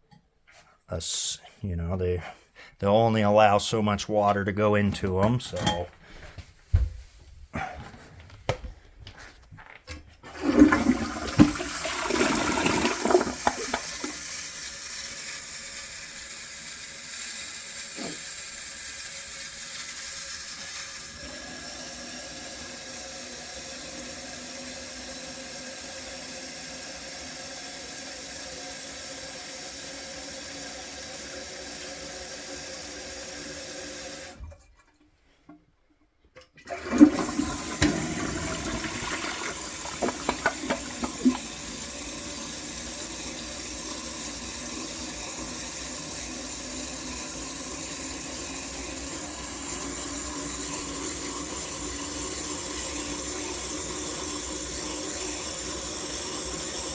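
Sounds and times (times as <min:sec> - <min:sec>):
toilet flushing: 0:10.0 - 0:35.0, 0:36.5 - 0:56.9
fill valve hissing: 0:10.3 - 0:26.3, 0:36.8 - 0:56.9.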